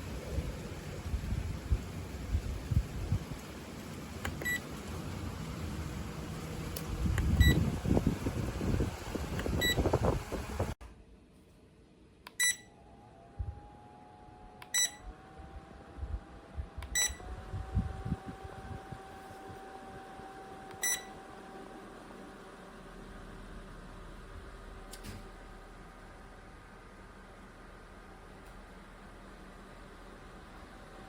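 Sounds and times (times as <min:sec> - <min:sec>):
fan motor whine: 0:00.0 - 0:10.8, 0:12.4 - 0:31.0
fan beeping: 0:04.2 - 0:10.8, 0:12.3 - 0:22.2.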